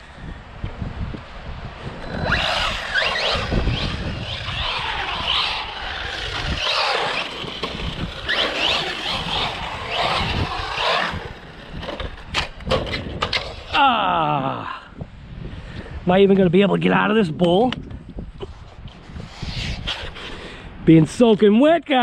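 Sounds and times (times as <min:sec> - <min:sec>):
electric motor whining: 0:02.0 - 0:13.8
tyres scrabbling on wet concrete: 0:02.2 - 0:13.7.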